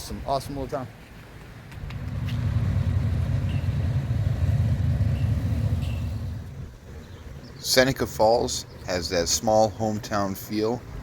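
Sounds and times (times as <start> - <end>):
vehicle driving past: 1.8 - 6.7.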